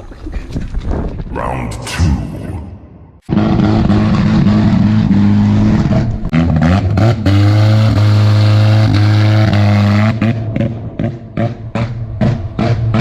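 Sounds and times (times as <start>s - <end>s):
car engine revving with rod knock: 5.6s - 13.0s.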